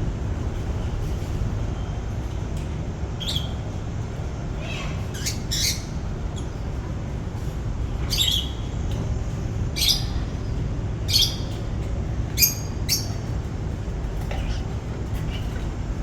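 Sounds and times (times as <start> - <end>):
low background rumble: 0.0 - 16.0.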